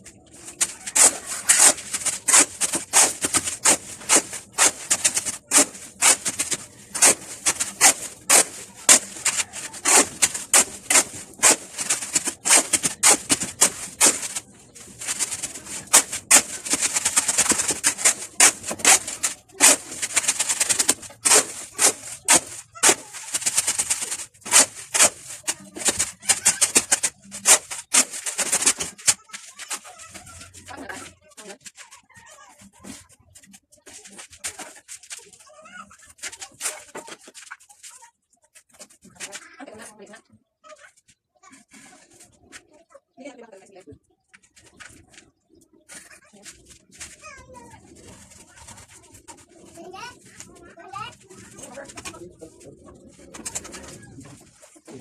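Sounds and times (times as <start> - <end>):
hand tools scraping material: 0.0 - 32.0, 51.3 - 55.0
hand tools striking material: 0.5 - 29.9.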